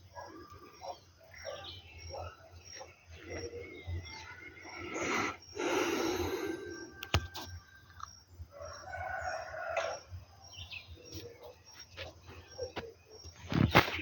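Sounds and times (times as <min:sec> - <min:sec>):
rooster crowing: 0:08.5 - 0:10.1.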